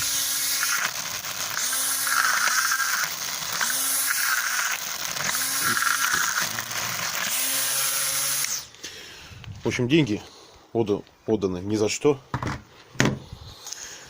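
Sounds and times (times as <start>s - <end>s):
grass trimmer motor whining: 0.0s - 8.8s
hiss: 1.5s - 6.4s.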